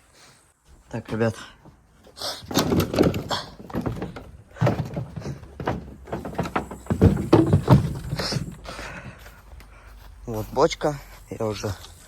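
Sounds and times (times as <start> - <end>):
irregular knocks and thuds: 0.7 - 10.2.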